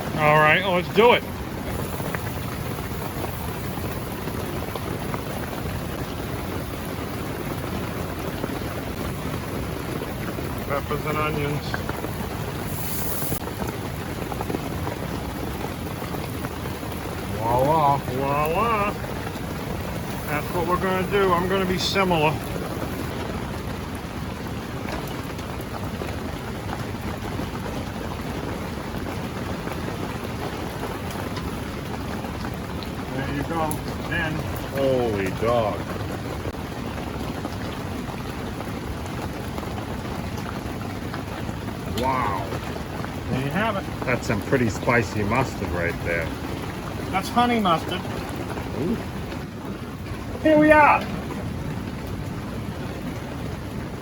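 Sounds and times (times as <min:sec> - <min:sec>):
heavy rain on tent: 0:00.0 - 0:54.0
food sizzling in a pan: 0:11.4 - 0:15.0, 0:15.6 - 0:23.1.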